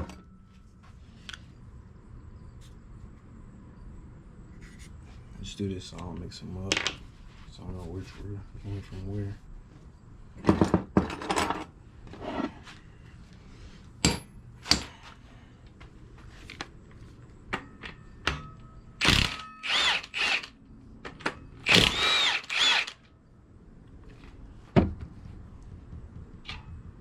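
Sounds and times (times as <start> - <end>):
sharp metal knocks: 14.0 - 15.0
power tool whining in bursts: 19.0 - 20.6, 21.6 - 23.0.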